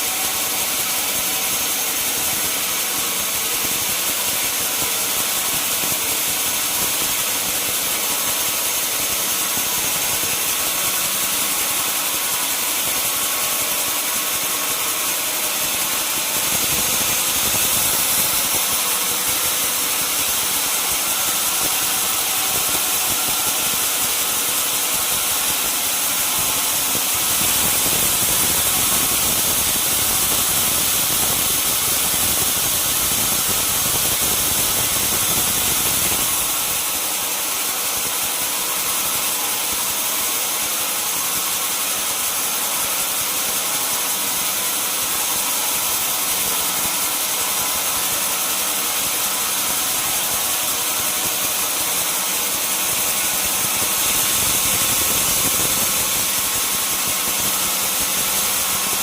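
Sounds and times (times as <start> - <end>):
sawmill saw whining: 0.0 - 59.0.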